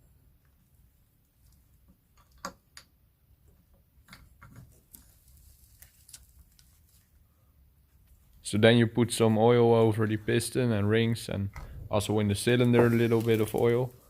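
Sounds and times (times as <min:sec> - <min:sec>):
faint metal clicks and taps: 0:01.4 - 0:05.1.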